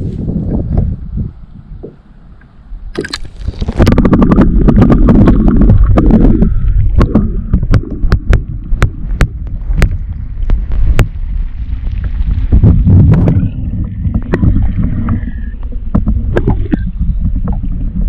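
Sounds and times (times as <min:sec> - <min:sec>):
muffled underwater rumble: 0:00.0 - 0:18.0
sharp underwater clicks: 0:02.4 - 0:11.3, 0:14.1 - 0:17.7
water gurgling: 0:02.9 - 0:18.0.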